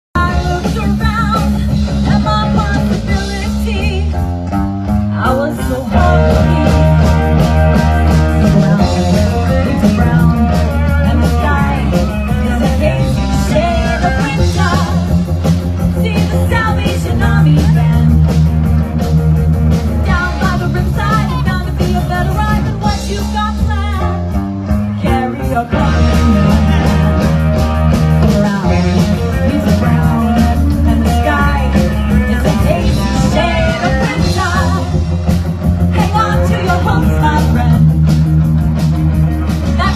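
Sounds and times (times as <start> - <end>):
guitar: 0.2 - 39.9
rock music: 0.2 - 39.9
steady bass line: 0.2 - 39.9
person singing: 5.1 - 15.2, 20.1 - 24.2, 24.8 - 27.4, 28.2 - 35.1, 35.8 - 37.9.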